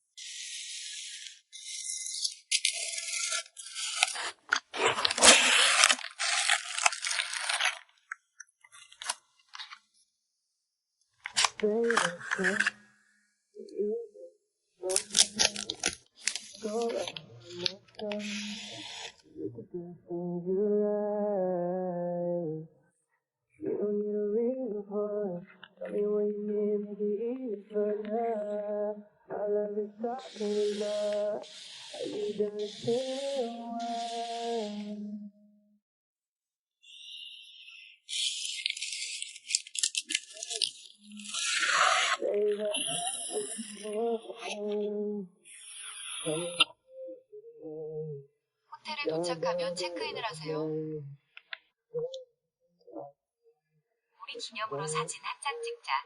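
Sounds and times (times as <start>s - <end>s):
packing materials crinkling: 3.2s - 8.1s, 14.9s - 17.7s, 38.2s - 41.8s
slow song with sung melody: 11.3s - 22.9s, 23.5s - 35.4s, 41.0s - 48.3s.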